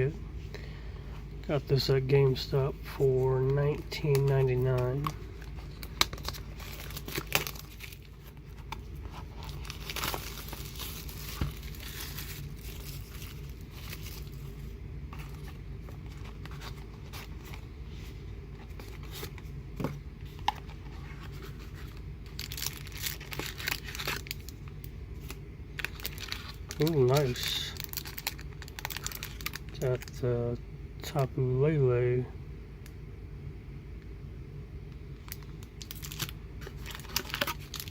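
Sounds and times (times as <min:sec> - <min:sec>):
steady low hum: 0:00.0 - 0:37.9
packaging tearing and crinkling: 0:04.0 - 0:14.6, 0:21.2 - 0:24.5, 0:25.8 - 0:30.1, 0:35.3 - 0:37.9.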